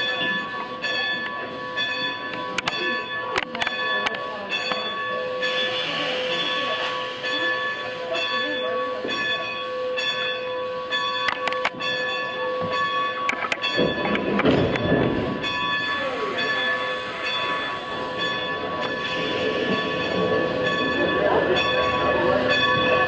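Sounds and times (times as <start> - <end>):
locomotive bell ringing: 0.0 - 23.0
loud steam rushing burst: 18.9 - 20.6.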